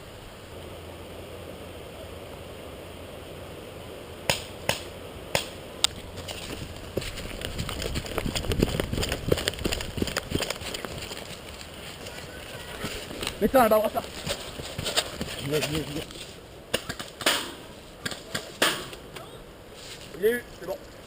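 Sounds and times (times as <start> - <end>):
quick footsteps on ground: 5.4 - 19.0.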